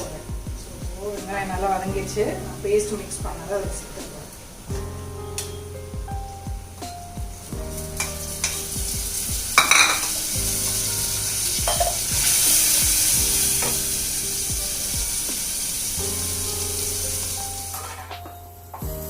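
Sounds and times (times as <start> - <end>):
food sizzling in hot oil: 0.0 - 19.0.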